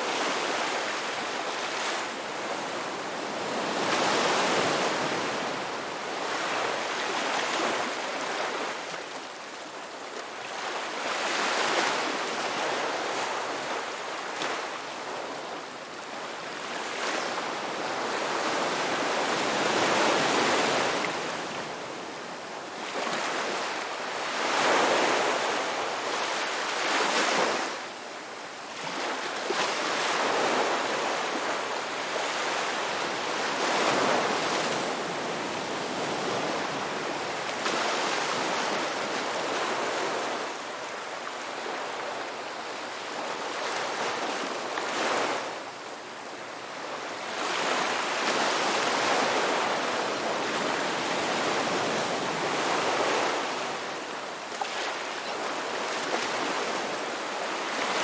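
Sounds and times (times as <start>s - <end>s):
sea waves breaking on shore: 16.5s - 27.9s, 28.7s - 45.7s, 46.4s - 58.0s.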